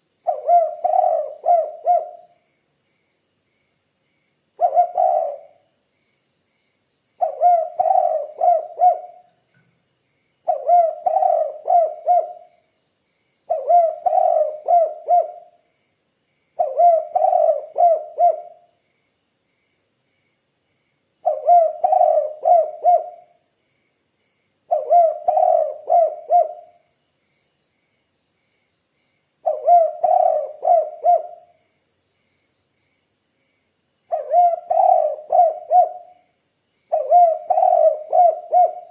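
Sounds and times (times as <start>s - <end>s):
dove cooing: 0.3s - 2.4s, 4.6s - 5.6s, 7.2s - 9.3s, 10.5s - 12.5s, 13.5s - 15.6s, 16.6s - 18.7s, 21.2s - 23.4s, 24.7s - 26.8s, 29.4s - 31.6s, 34.1s - 36.2s, 36.9s - 38.9s.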